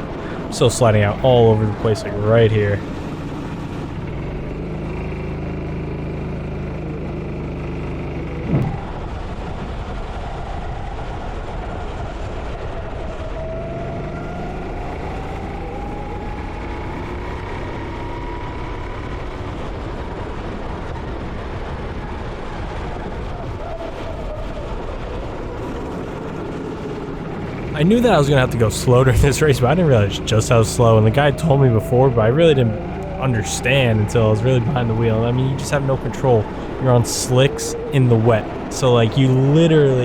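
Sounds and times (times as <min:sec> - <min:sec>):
go-kart engine: 0:00.0 - 0:40.0
wind and spray rushing: 0:08.4 - 0:14.6.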